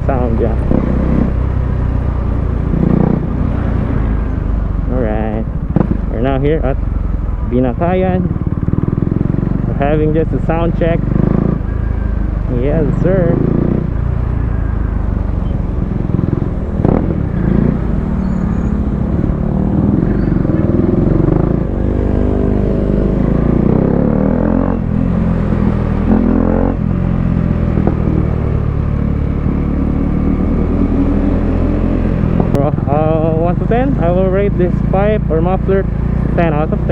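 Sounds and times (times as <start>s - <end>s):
motorcycle engine deep note: 0.0s - 36.9s.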